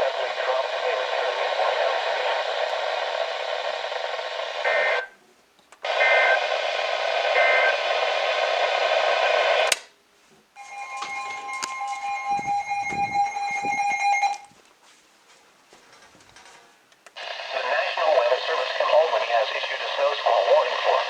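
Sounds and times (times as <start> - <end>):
radio static hiss: 0.0 - 5.2, 5.8 - 9.8, 17.2 - 21.0
click: 9.7 - 9.9
steady alert tone: 10.6 - 14.5
two-pitch data tones: 10.6 - 14.5.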